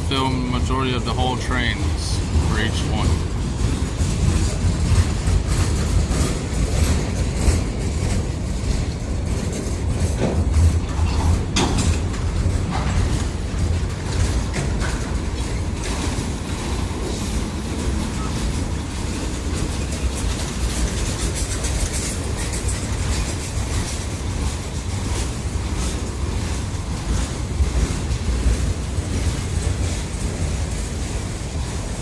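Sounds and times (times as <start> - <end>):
freight train rumbling past: 0.0 - 32.0.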